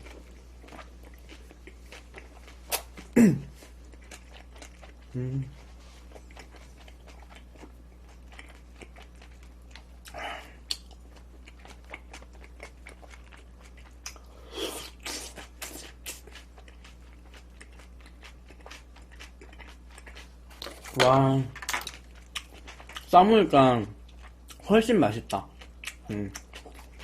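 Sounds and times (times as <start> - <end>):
crisp chewing crunches: 6.0 - 21.0.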